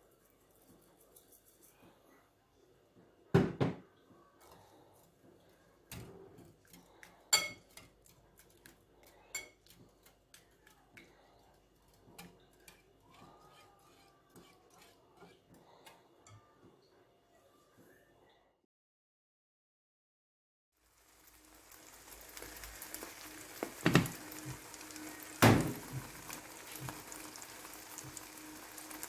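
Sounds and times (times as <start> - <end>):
utensils clinking against dishes: 6.0 - 16.5.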